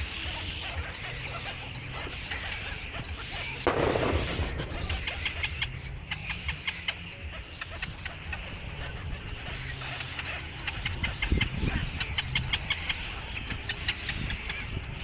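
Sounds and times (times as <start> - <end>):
birds chirping: 0.0 - 15.0
low rumble: 3.7 - 5.9.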